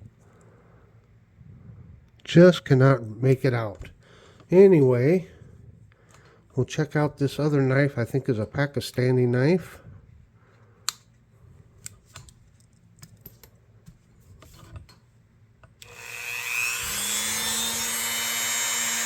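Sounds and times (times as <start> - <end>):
electric power tool running: 15.8 - 19.0.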